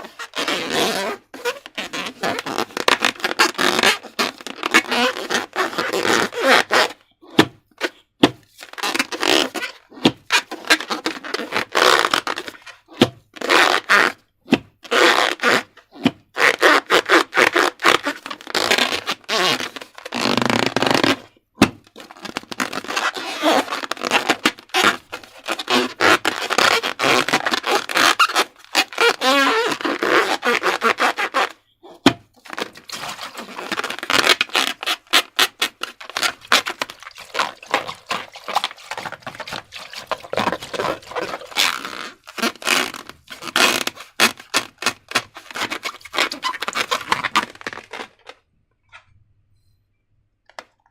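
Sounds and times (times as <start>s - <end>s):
slime squelching and crackling: 31.9s - 48.3s.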